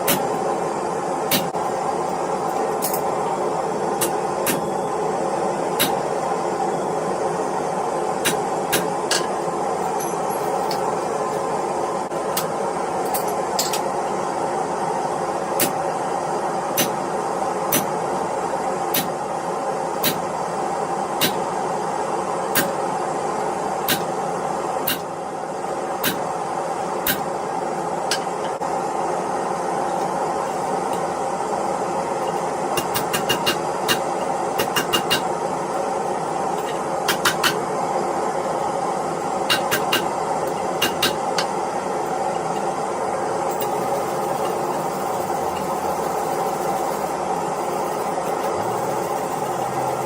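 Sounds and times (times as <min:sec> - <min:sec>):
hammer striking iron: 0:05.8 - 0:06.0, 0:16.8 - 0:17.0, 0:21.2 - 0:21.4, 0:22.5 - 0:22.8, 0:24.9 - 0:25.1, 0:26.0 - 0:26.2, 0:27.0 - 0:27.3, 0:32.8 - 0:35.3, 0:39.5 - 0:41.5.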